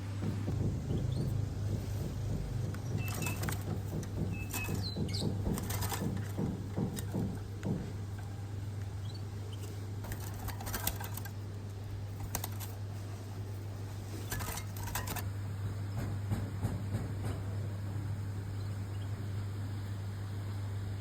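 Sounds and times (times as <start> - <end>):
steady low hum: 0.0 - 21.0
bird tapping in cage: 0.2 - 11.4, 12.1 - 12.8, 14.3 - 15.2.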